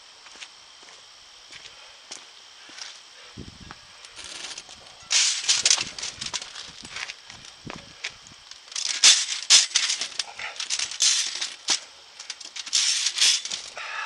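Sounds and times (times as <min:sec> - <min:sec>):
steel saw blades clattering: 0:04.2 - 0:06.6, 0:08.7 - 0:13.8.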